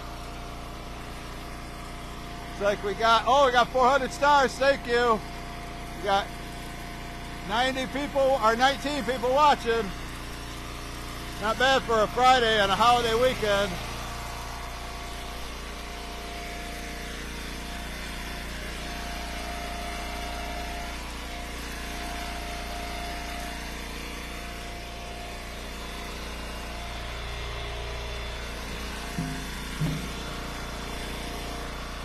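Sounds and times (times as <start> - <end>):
engine idling: 0.0 - 32.0.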